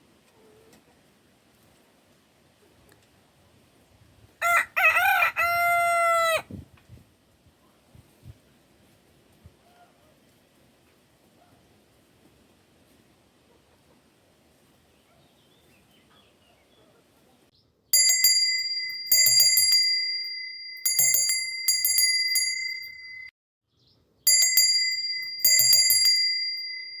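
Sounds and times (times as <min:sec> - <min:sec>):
bright bell ringing: 0:18.0 - 0:23.3, 0:24.3 - 0:27.0.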